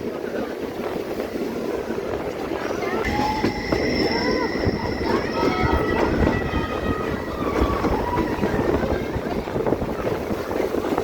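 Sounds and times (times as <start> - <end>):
train wheels rumbling: 0.5 - 11.0
thin high tones: 3.0 - 8.8.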